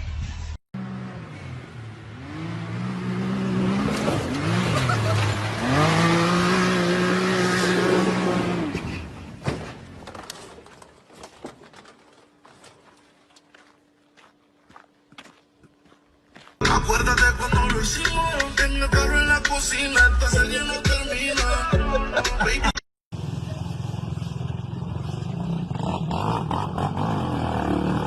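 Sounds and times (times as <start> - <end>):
engine revving hard: 0.8 - 8.8, 25.4 - 28.0.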